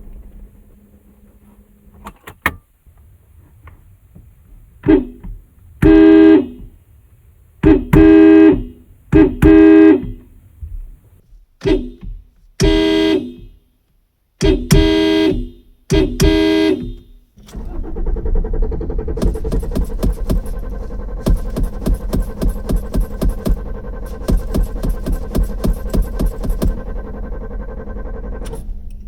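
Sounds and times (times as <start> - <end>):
car horn honking: 4.8 - 6.8, 7.6 - 10.4, 11.6 - 13.6, 14.4 - 18.0, 19.2 - 28.6
steady mechanical noise: 14.5 - 29.0.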